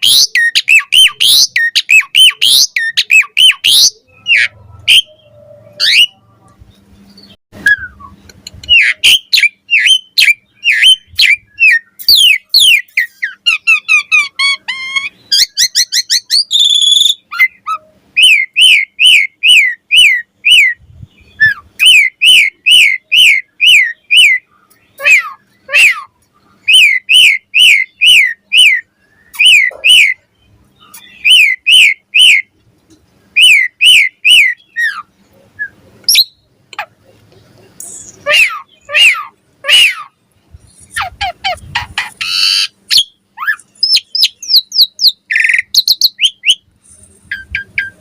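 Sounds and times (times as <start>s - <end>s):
starling chattering trill: 40.8s - 46.5s.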